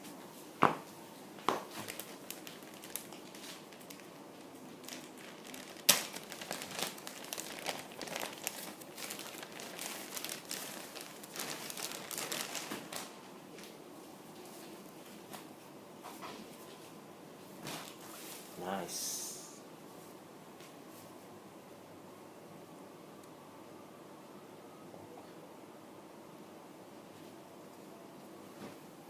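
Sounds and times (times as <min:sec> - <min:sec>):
wrapping crinkling and rustling: 0:01.6 - 0:13.8, 0:17.6 - 0:18.6.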